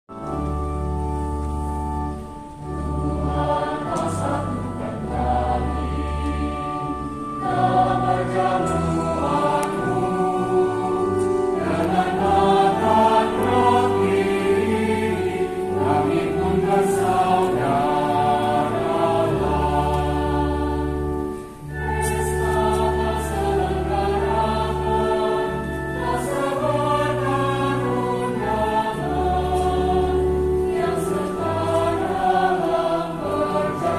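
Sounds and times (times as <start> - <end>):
youth choir singing: 2.7 - 33.9.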